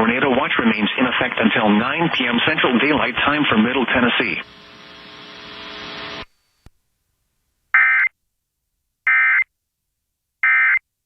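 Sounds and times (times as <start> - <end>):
radio hiss: 0.0 - 6.4.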